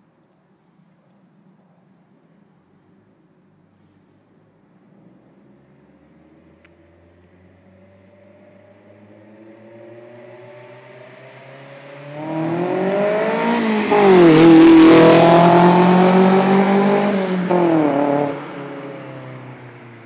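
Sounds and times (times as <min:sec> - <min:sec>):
car engine revving: 0:07.5 - 0:19.6.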